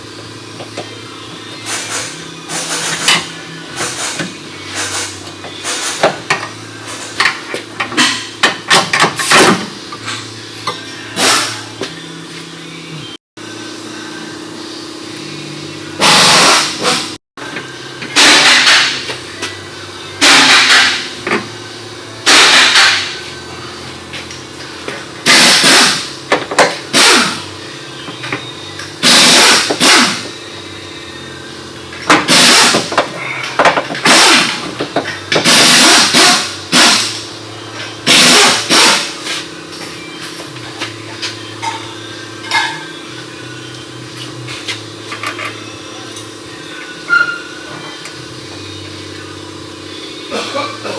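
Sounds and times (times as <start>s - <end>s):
steady shop hum: 0.0s - 50.9s
pneumatic impact wrench bursts: 11.2s - 11.6s, 16.0s - 17.1s, 18.1s - 19.1s, 20.2s - 21.2s, 22.2s - 23.2s, 25.2s - 27.5s, 29.0s - 30.3s, 32.0s - 37.3s, 38.0s - 39.4s.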